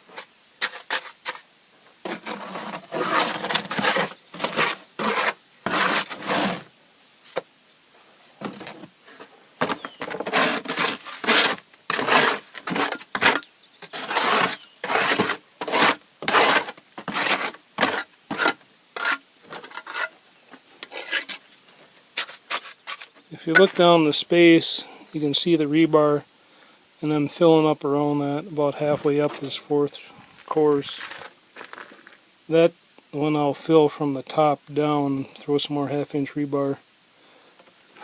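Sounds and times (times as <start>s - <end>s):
tool scraping concrete: 0.0s - 6.7s, 9.6s - 20.1s, 20.8s - 21.4s, 22.2s - 23.8s.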